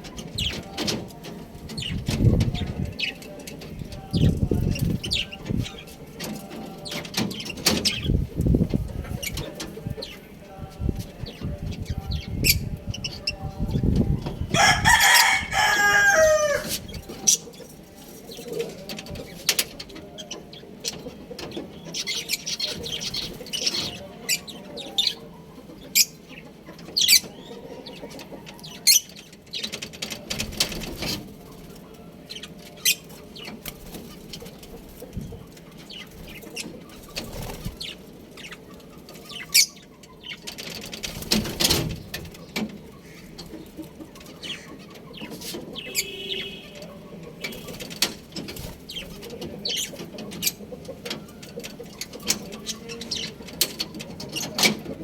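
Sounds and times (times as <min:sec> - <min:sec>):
budgerigars chirping: 0:44.2 - 0:48.0.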